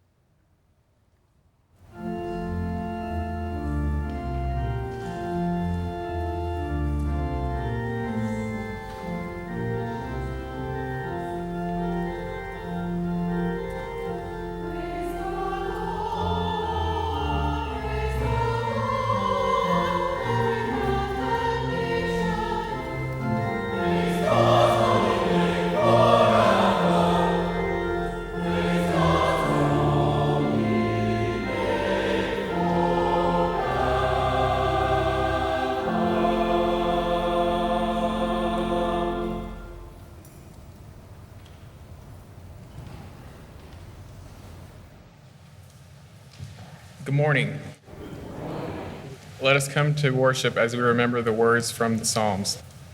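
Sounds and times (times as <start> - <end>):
church organ playing: 1.9 - 41.0
choir singing: 7.6 - 40.2, 47.9 - 49.4.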